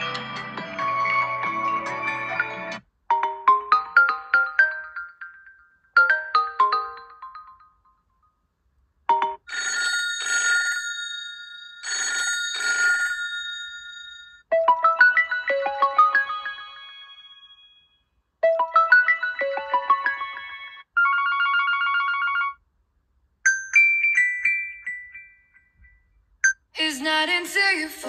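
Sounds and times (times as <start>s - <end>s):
rising melodic ringtone notes: 0.0s - 8.4s, 9.1s - 10.2s, 13.2s - 22.6s, 23.4s - 26.6s
rising ringtone melody: 0.0s - 8.4s, 9.1s - 22.6s, 23.5s - 26.6s
bell-like telephone ring: 9.3s - 22.6s.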